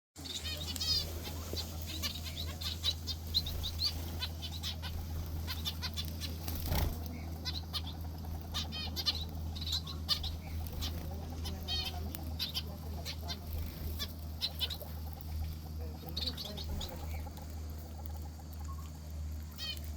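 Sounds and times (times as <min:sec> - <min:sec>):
finches chirping: 0:00.2 - 0:19.9
steady low hum: 0:00.2 - 0:19.9.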